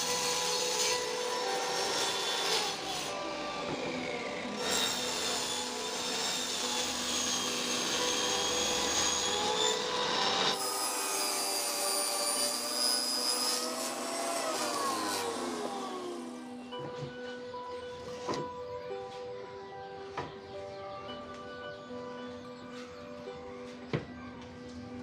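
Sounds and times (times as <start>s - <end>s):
power tool cutting wood: 0.0s - 16.8s.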